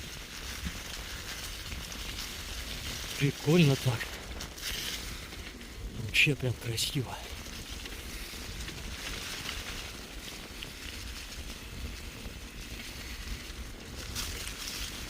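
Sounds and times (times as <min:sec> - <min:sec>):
bicycle tyres hissing on road: 0:00.0 - 0:15.0
wind rumbling on microphone: 0:00.0 - 0:15.0.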